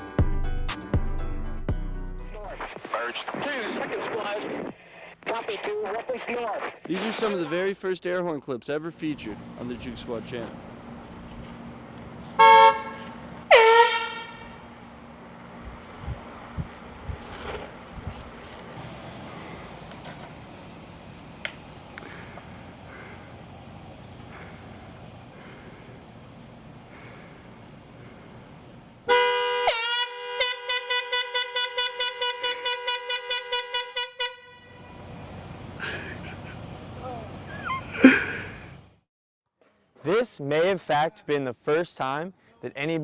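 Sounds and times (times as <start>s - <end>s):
air horn blast: 12.3s - 14.7s, 29.0s - 35.2s.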